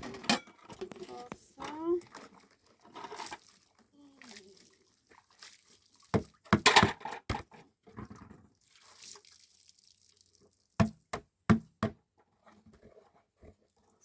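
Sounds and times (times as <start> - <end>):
sharp knocks and clatter: 6.2 - 8.4.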